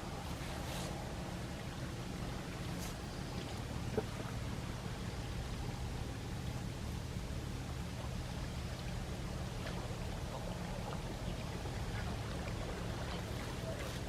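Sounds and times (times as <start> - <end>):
sea waves lapping at shore: 0.0 - 14.0
small water splashes: 0.0 - 14.0.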